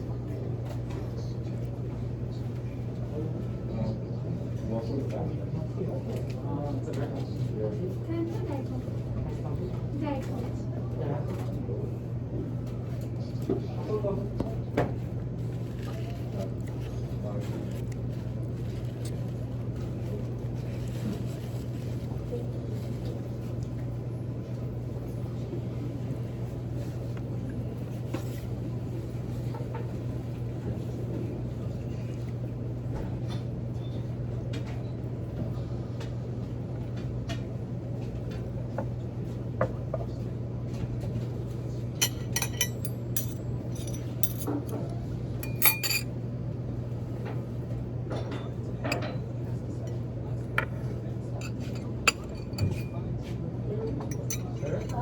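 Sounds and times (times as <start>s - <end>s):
cutlery clinking on plates: 42.0s - 46.1s, 51.4s - 53.0s, 54.0s - 55.0s.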